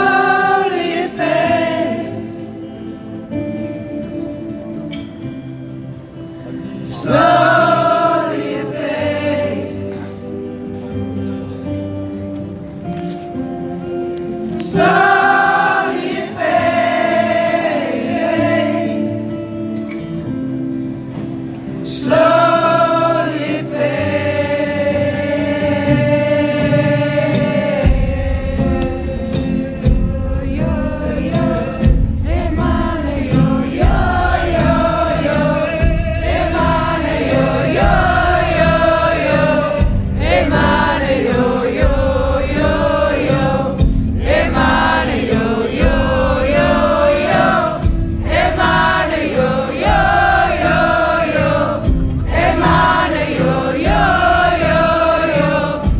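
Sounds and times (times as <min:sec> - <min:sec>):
long held wordless singing: 0:00.0 - 0:55.9
deep low beat: 0:35.8 - 0:47.0.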